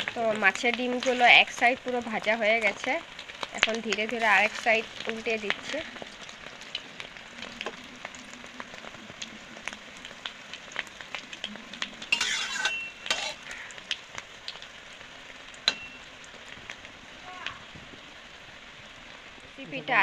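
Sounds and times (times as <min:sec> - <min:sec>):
spatula scraping: 0:00.0 - 0:02.9, 0:03.6 - 0:06.1, 0:12.0 - 0:13.7
fritters sizzling in hot oil: 0:00.0 - 0:20.0
sharp metal clink: 0:15.7 - 0:16.0.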